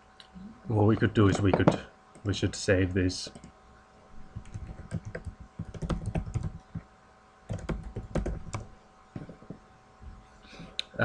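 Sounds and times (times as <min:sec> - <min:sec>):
computer keyboard typing: 0:04.4 - 0:06.8, 0:07.5 - 0:09.4.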